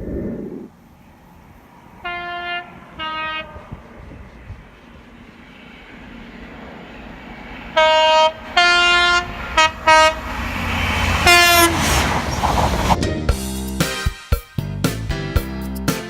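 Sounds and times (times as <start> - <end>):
train rumble: 0.0 - 13.5
train horn blasts: 2.0 - 3.9, 7.7 - 12.4.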